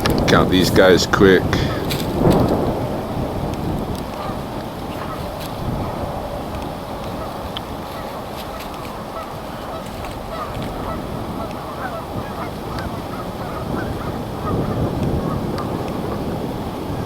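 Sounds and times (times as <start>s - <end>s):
geese honking: 0.0s - 17.0s
wind on microphone: 0.0s - 17.0s.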